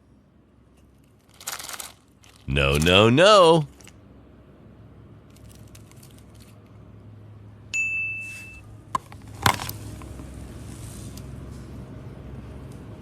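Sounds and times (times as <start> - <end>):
high bell-like ding: 7.8 - 8.6.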